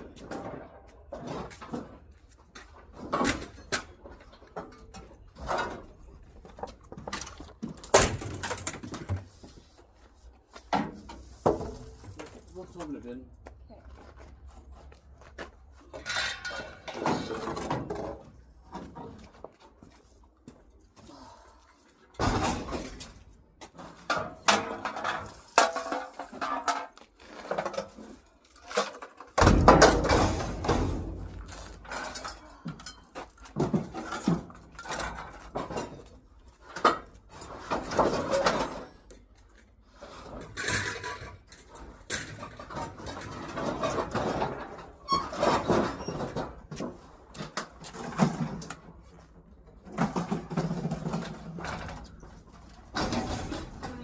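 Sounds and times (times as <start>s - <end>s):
junk knocking and clattering: 28.9s - 38.9s.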